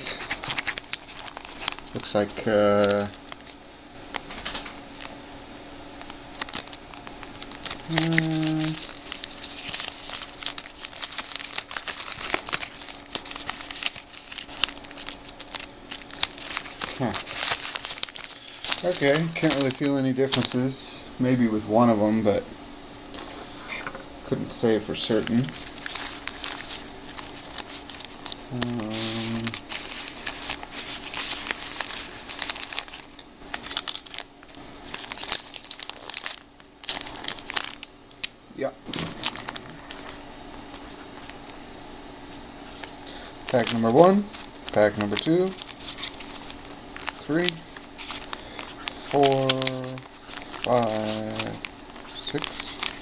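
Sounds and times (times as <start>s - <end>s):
card packs crinkling: 0.0s - 22.0s, 24.5s - 53.0s
faint steady hum: 0.0s - 53.0s
short hummed voice: 7.8s - 8.9s, 28.5s - 29.6s, 49.3s - 50.0s.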